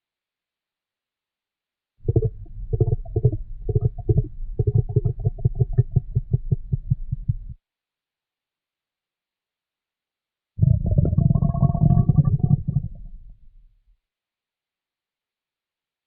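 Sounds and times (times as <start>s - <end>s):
stomach growling: 2.0s - 7.6s, 10.6s - 13.6s.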